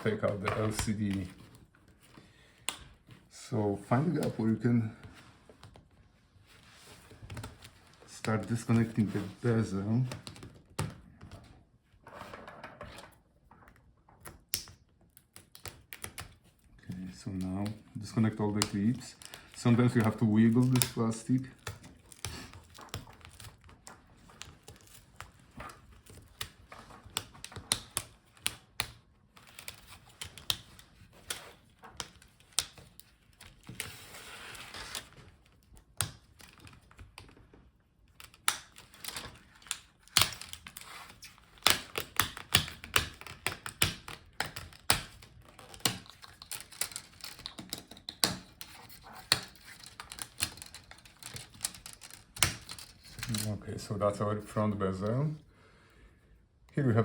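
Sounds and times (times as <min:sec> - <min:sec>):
plastic clips clicking and popping: 0:17.3 - 0:25.3, 0:41.5 - 0:53.5.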